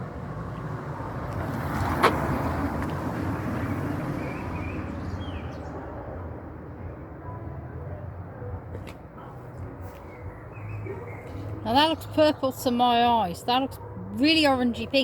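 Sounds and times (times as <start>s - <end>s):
vehicle passing by: 0.0s - 6.9s.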